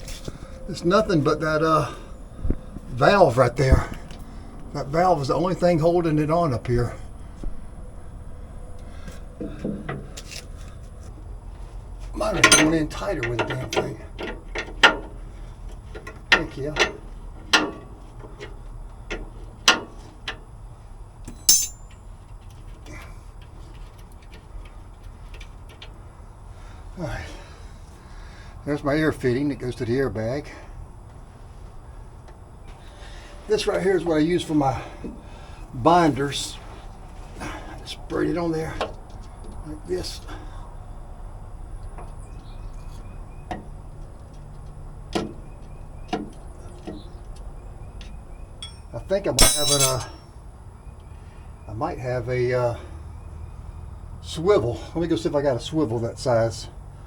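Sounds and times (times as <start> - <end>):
low steady rumble: 0.0 - 19.7, 48.4 - 50.6
chain clanking against metal: 12.4 - 12.8, 21.3 - 22.0, 48.6 - 50.3
metal tools knocking and clinking: 12.4 - 14.7, 21.3 - 22.0, 48.6 - 50.3.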